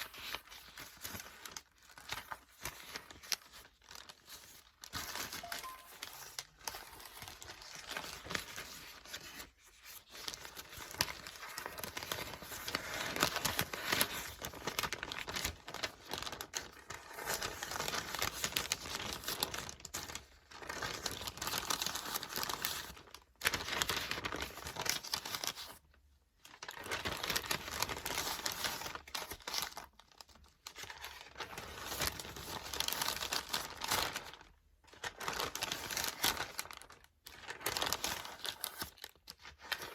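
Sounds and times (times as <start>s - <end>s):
book pages rustling: 0.1s - 25.8s, 37.4s - 39.9s.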